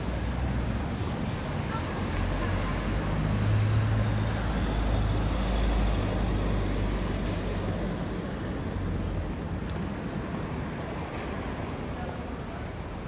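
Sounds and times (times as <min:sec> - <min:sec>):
tyre hiss on wet street: 0:00.0 - 0:09.5.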